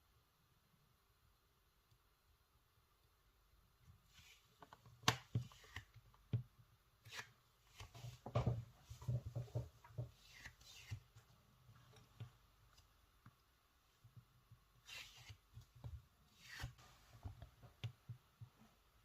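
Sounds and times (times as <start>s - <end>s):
soft taps and clicks of clay: 17.2s - 18.6s.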